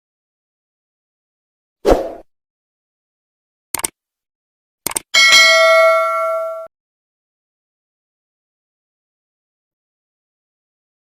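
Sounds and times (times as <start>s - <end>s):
mouse clicking: 3.8s - 4.0s, 4.9s - 5.1s
bright bell ding: 5.2s - 6.7s.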